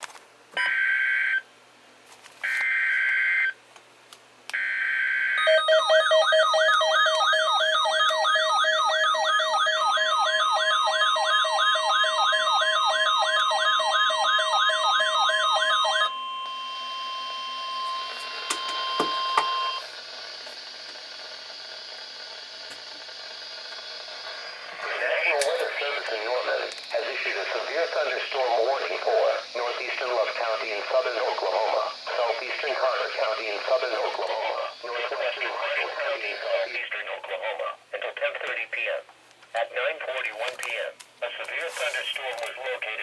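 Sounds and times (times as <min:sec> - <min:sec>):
warbling siren-like alert tone: 0:04.6 - 0:20.0
steady warning tone: 0:04.6 - 0:37.2
radio static: 0:18.2 - 0:43.0
screeching digital data bursts: 0:19.3 - 0:37.0.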